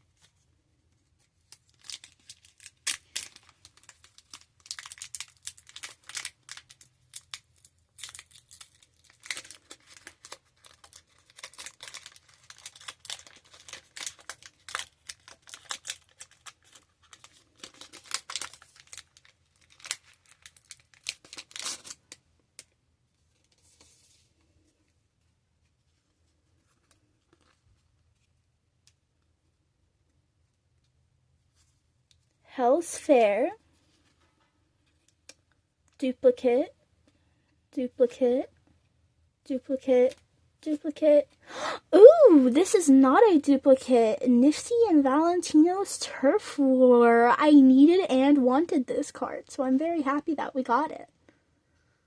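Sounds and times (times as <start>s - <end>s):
wrapper tearing and crinkling: 1.4s - 22.7s.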